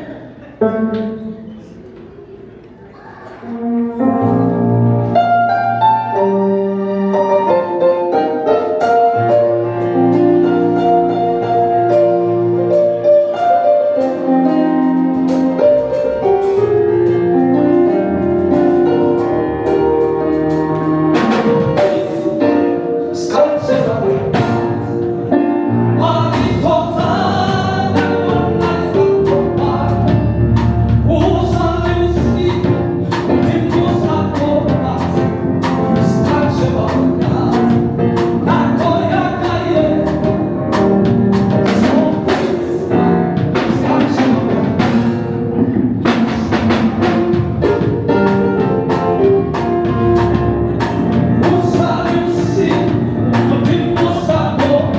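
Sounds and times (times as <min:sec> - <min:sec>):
band with drums: 0:08.8 - 0:22.7, 0:23.6 - 0:25.4, 0:26.0 - 0:54.9
voices singing: 0:21.4 - 0:30.3, 0:41.6 - 0:45.2.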